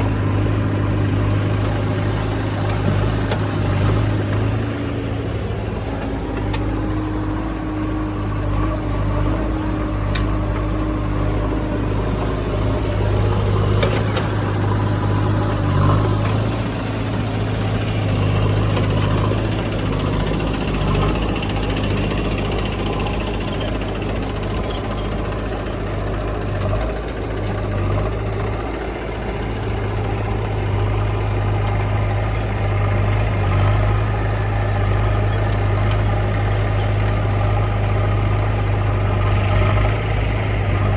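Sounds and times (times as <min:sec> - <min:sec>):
heavy diesel engine running: 0:00.0 - 0:40.9.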